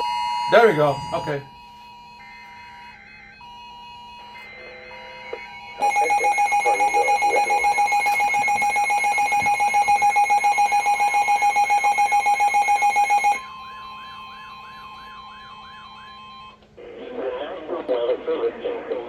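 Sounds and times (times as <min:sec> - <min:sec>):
faint steady tone: 0:05.8 - 0:13.4
electronic alarm beeping: 0:05.8 - 0:13.8.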